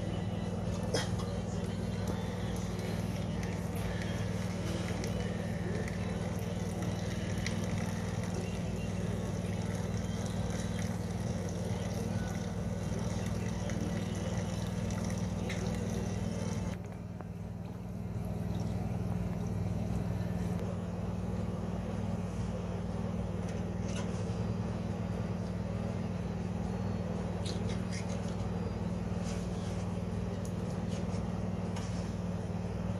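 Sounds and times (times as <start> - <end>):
snowblower engine running: 0.0 - 24.6.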